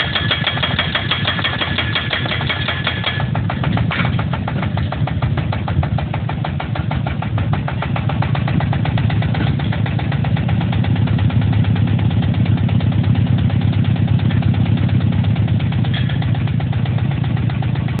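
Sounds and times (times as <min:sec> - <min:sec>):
hammer knocking rapidly: 0:00.0 - 0:12.9
pile driver engine: 0:00.0 - 0:18.0.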